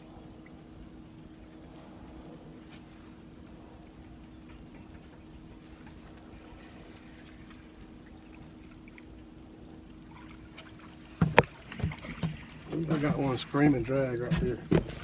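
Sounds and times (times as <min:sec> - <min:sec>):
boat low hum: 0:00.0 - 0:15.0
water trickling: 0:03.9 - 0:15.0.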